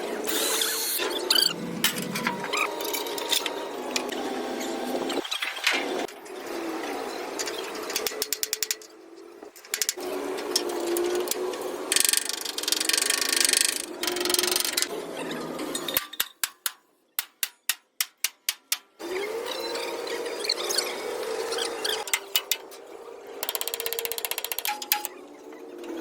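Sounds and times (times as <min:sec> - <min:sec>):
mechanical clicking and rattling: 0:07.4 - 0:08.9, 0:09.5 - 0:14.9, 0:23.4 - 0:25.2.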